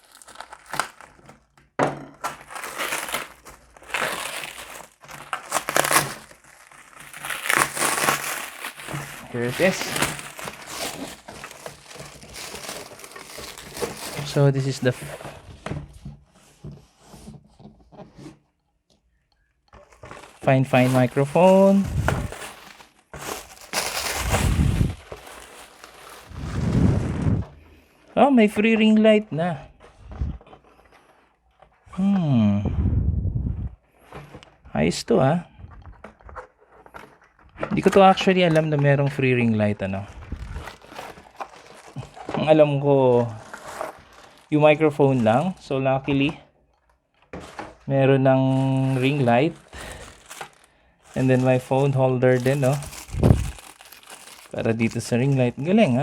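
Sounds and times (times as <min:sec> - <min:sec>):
plastic packaging crinkling: 0:00.0 - 0:15.6, 0:19.8 - 0:27.8, 0:35.6 - 0:56.0.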